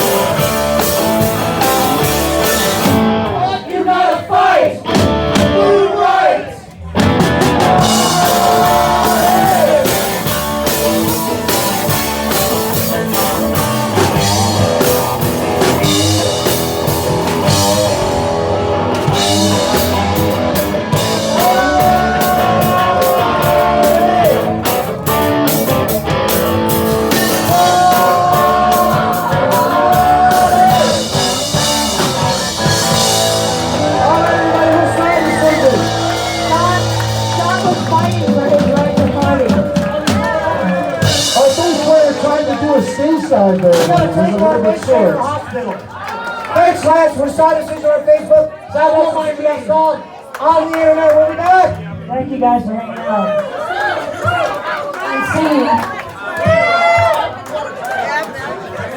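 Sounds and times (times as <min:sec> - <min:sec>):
live rock band: 0:00.0 - 0:03.5, 0:04.8 - 0:05.8, 0:06.9 - 0:44.9
person singing long notes: 0:07.7 - 0:10.0, 0:27.5 - 0:31.2.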